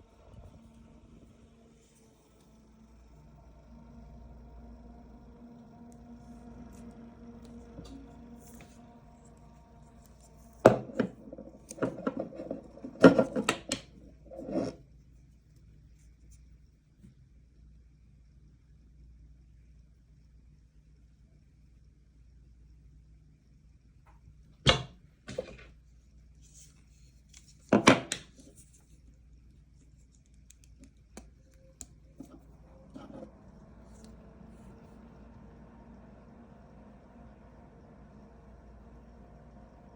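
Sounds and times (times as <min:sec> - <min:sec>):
small fan humming: 0:00.0 - 0:16.7, 0:24.2 - 0:39.9
handling scrape: 0:07.9 - 0:14.8, 0:32.1 - 0:33.3.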